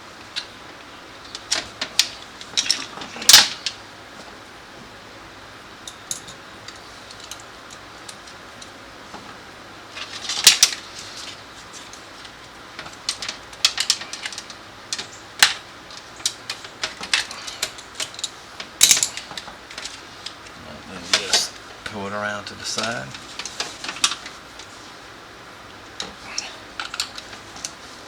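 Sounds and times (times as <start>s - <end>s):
small tools clicking on parts: 12.9s - 20.4s.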